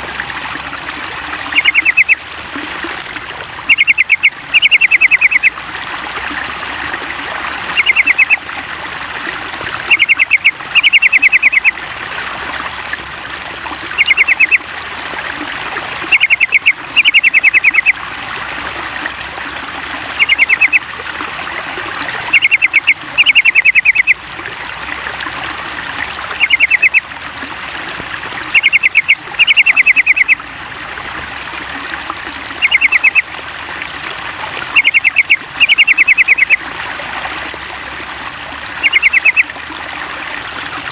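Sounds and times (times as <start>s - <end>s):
trickle of running water: 0.0s - 40.9s
bulbul chirping calls: 1.5s - 2.2s, 3.6s - 5.5s, 7.8s - 8.4s, 9.9s - 11.7s, 14.0s - 14.6s, 16.1s - 18.0s, 20.2s - 20.8s, 22.3s - 24.2s, 26.3s - 27.0s, 28.5s - 30.4s, 32.6s - 33.2s, 34.7s - 36.6s, 38.8s - 39.5s.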